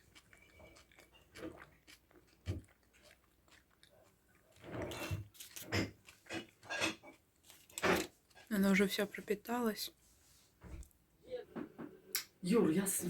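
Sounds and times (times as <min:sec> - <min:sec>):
person chewing and biting food: 0:00.0 - 0:08.4.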